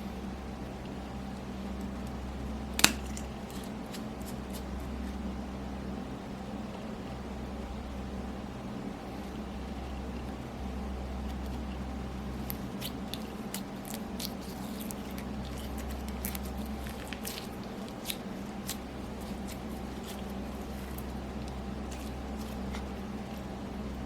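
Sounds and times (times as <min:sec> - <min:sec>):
steady low hum: 0:00.0 - 0:24.0
slime squished by hand: 0:02.7 - 0:05.1, 0:12.4 - 0:23.7.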